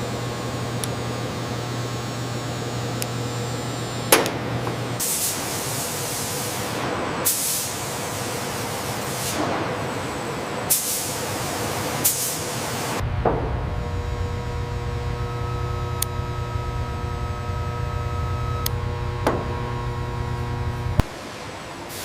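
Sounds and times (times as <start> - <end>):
industrial machinery noise: 0.0 - 22.0
compressed air hissing: 5.0 - 9.5, 10.7 - 13.0.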